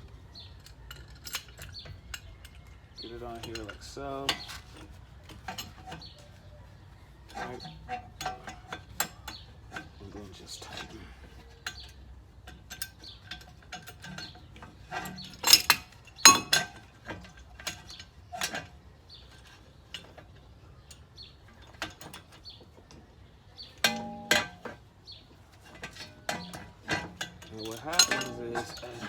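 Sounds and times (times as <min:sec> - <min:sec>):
metallic ring: 0:15.4 - 0:16.8, 0:23.8 - 0:24.8, 0:27.7 - 0:29.0.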